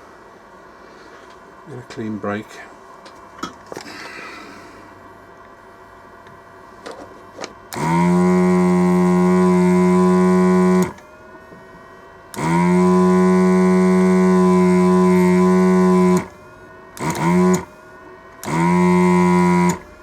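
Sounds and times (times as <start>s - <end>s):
small motorised tool buzzing: 7.7s - 11.4s, 12.3s - 20.0s.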